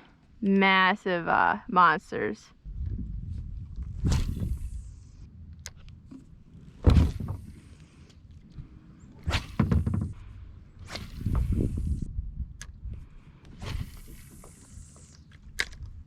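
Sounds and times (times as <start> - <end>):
low rumble: 2.6 - 8.7
knocks on plastic kayak hull: 9.6 - 10.2.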